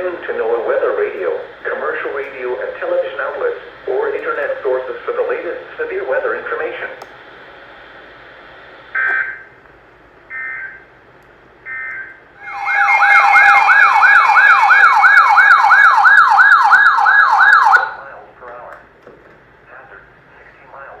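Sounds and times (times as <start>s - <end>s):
data tone bursts: 12.4s - 16.3s
electronic siren alert tone: 12.4s - 18.0s.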